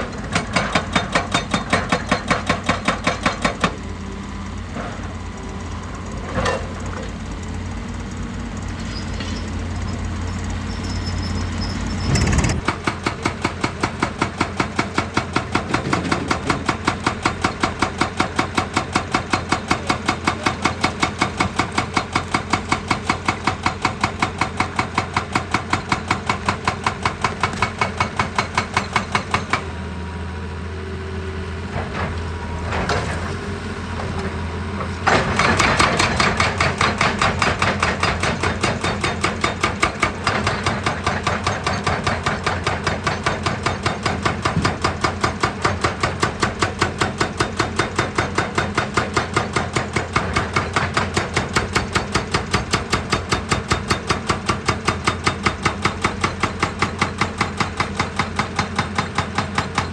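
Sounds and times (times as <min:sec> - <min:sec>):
diesel engine running: 0:00.0 - 0:48.2
machine hammering rock: 0:00.1 - 0:03.9, 0:12.0 - 0:29.7, 0:35.0 - 0:59.9.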